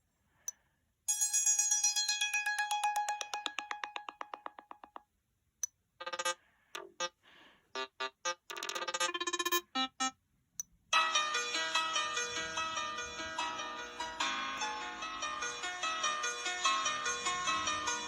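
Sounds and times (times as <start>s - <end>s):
keyboard-like ringtone tune: 1.1s - 5.0s, 6.0s - 7.2s, 7.8s - 10.2s, 11.0s - 18.0s
electronic ringtone pulses: 6.0s - 7.2s, 7.8s - 10.1s.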